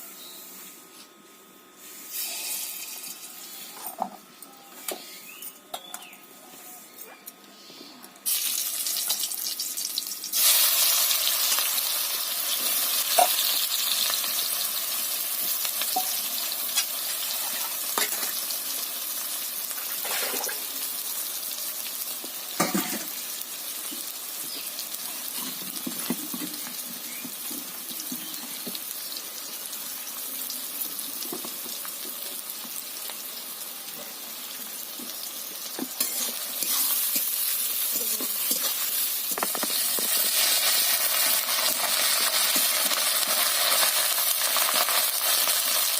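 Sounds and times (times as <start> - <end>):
food sizzling in hot oil: 1.9 - 4.0, 8.2 - 45.9
spoon stirring a pan: 35.7 - 43.9.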